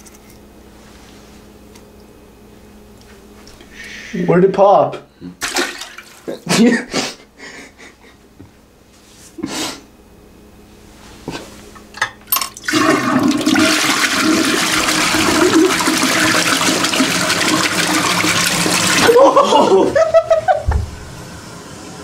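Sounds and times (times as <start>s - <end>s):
toilet flushing: 5.4s - 6.5s, 12.5s - 22.0s.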